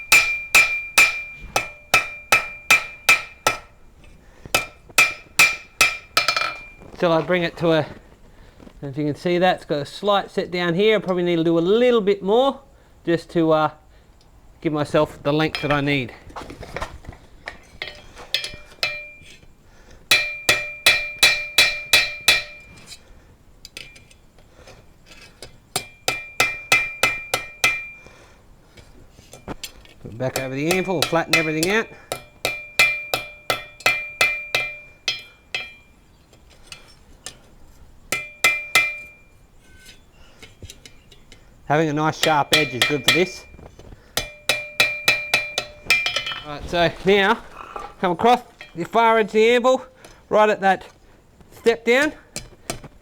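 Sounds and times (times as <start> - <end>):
hammer striking steel on anvil: 0.0 - 3.8, 4.5 - 7.0, 15.5 - 15.9, 17.8 - 19.4, 20.1 - 22.9, 25.7 - 28.1, 30.4 - 36.0, 38.1 - 41.4, 42.2 - 46.5
light hammer taps on anvil: 30.7 - 35.9.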